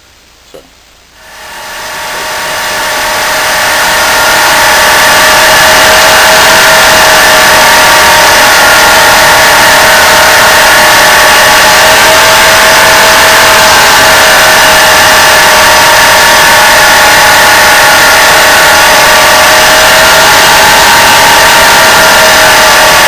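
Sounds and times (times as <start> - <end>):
belt sander grinding steel: 1.7 - 17.4.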